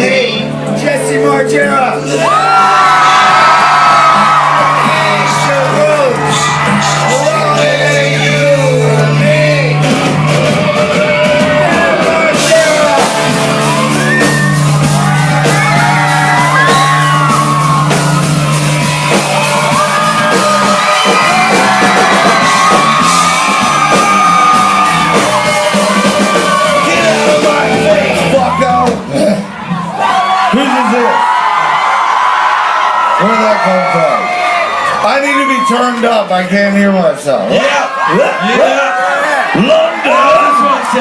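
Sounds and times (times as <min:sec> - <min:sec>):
shouted and sung vocals: 0:02.1 - 0:33.2
live punk rock band: 0:08.8 - 0:29.0.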